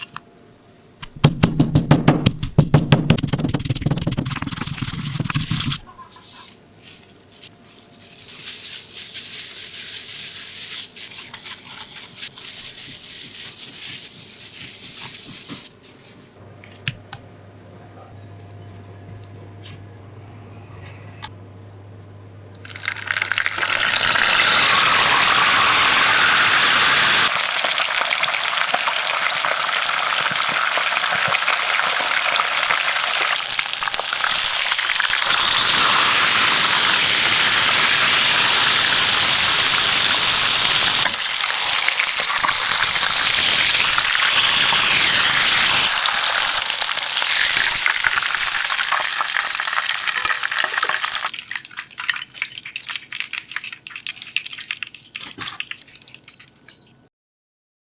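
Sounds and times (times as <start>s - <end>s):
fish sizzling in hot oil: 22.6s - 55.1s.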